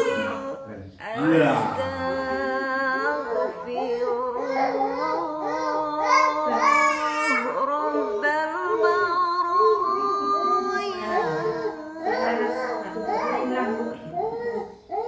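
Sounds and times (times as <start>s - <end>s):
high child-like voice singing: 3.1s - 11.5s.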